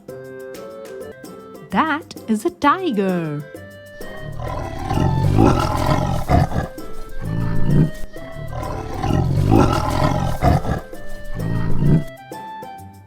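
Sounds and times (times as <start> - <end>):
tiger roaring and growling: 4.0 - 12.1.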